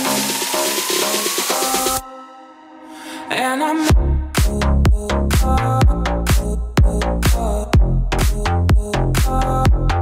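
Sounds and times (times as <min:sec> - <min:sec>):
electronic dance music: 0:00.0 - 0:10.0
heavy bass line: 0:03.9 - 0:10.0
kick drum: 0:03.9 - 0:10.0.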